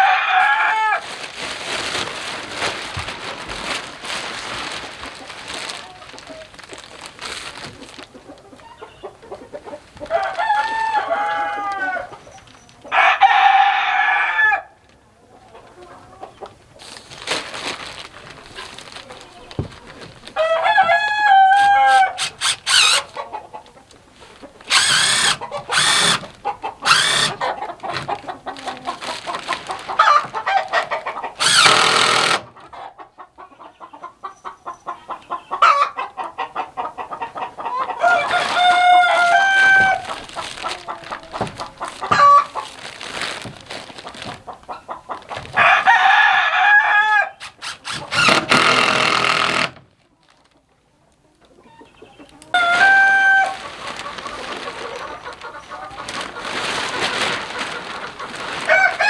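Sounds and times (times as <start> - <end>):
rooster crowing: 0.0 - 1.1, 10.1 - 12.2, 12.9 - 14.8, 20.4 - 23.2, 37.8 - 40.2, 45.6 - 48.2, 52.5 - 53.6, 58.6 - 59.0
chickens clucking: 0.0 - 13.3, 14.8 - 49.0, 50.6 - 59.0.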